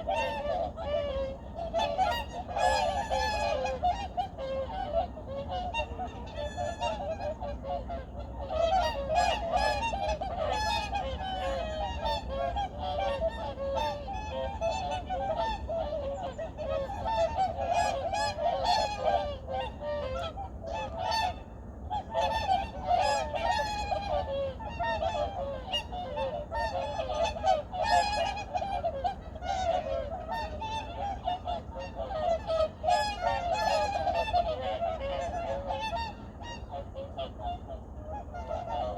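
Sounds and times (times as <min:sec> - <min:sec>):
flock of geese honking: 0:00.0 - 0:38.9.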